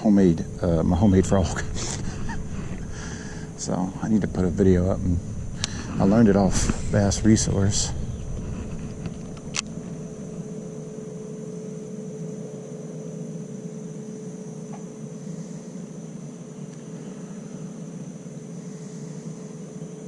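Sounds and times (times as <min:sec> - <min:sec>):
low rumble: 0:00.0 - 0:11.1
faint high whine: 0:00.0 - 0:20.0
steady mid-pitched hum: 0:00.0 - 0:20.0.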